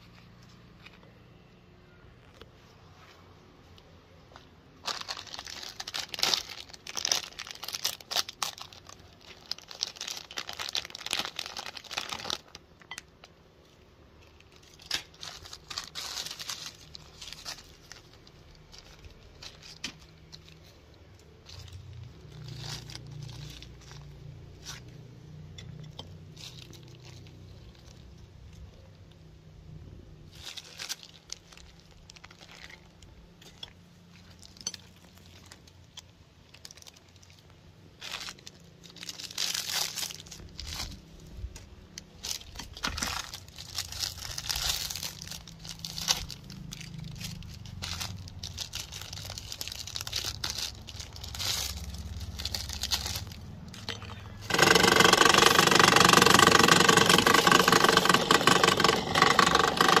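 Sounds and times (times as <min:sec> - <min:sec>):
crinkling and clicking: 0:03.6 - 0:29.3, 0:30.3 - 1:00.0
electric meat grinder motor humming: 0:54.5 - 1:00.0.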